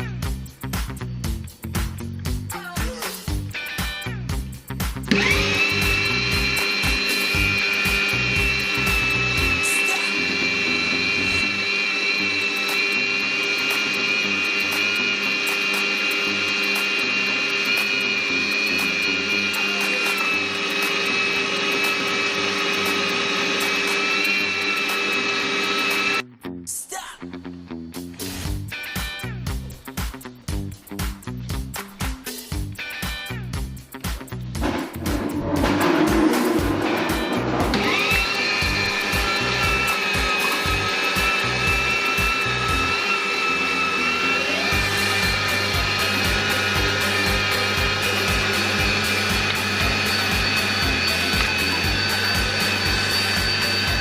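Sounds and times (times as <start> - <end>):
background music with beat: 0.0 - 9.8, 28.0 - 43.1, 44.7 - 54.0
meat grinder motor whining: 5.1 - 26.2, 34.6 - 54.0.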